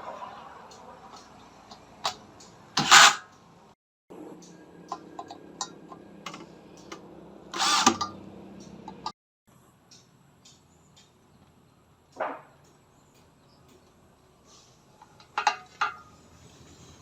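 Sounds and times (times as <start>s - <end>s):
parts clicking and knocking: 0.6s - 3.6s, 4.4s - 9.1s, 15.0s - 16.4s.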